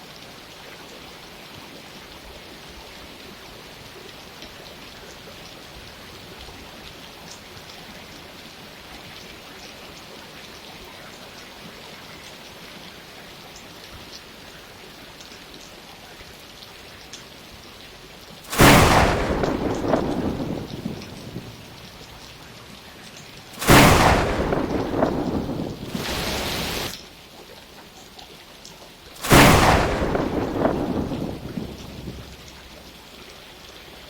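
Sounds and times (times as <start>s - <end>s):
steady rain falling: 0.0s - 34.0s
raindrops ticking: 18.2s - 27.0s, 27.9s - 34.0s
thunder crack and rumble: 18.5s - 22.4s, 23.5s - 27.0s, 29.2s - 33.1s.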